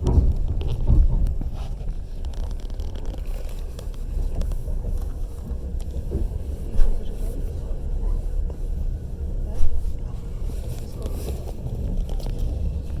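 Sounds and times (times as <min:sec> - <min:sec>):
light clicks and rattles: 0:00.0 - 0:07.6
train wheels rumbling on rails: 0:00.0 - 0:13.0.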